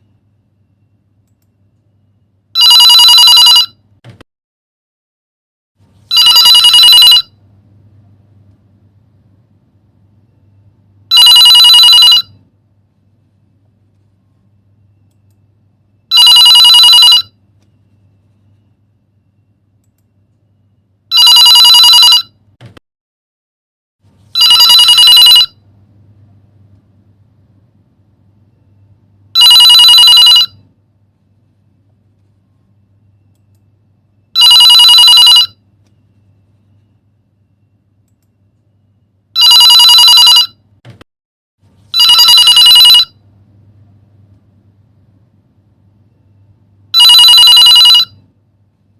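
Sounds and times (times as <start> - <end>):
telephone ringing: 2.5 - 3.9, 6.1 - 7.4, 11.1 - 12.5, 15.9 - 19.5, 21.1 - 22.4, 24.4 - 25.7, 29.3 - 30.7, 34.2 - 37.7, 39.3 - 40.7, 41.9 - 43.2, 46.9 - 48.3.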